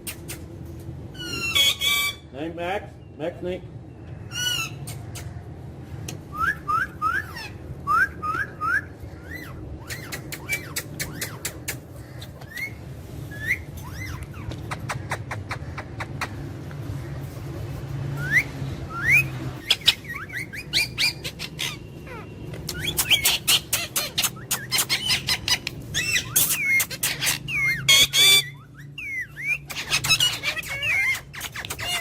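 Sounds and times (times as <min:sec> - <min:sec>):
parrot chirping and whistling: 0:01.2 - 0:02.2, 0:06.3 - 0:11.5, 0:12.5 - 0:14.5, 0:18.2 - 0:32.0
parrot squawk: 0:01.2 - 0:02.3, 0:04.3 - 0:05.3, 0:18.2 - 0:32.0.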